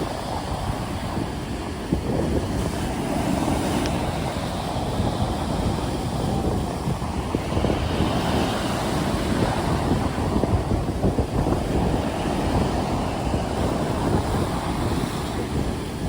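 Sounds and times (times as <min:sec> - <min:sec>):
stormy sea waves breaking: 0:00.0 - 0:16.0
wind buffeting microphone: 0:00.0 - 0:16.0.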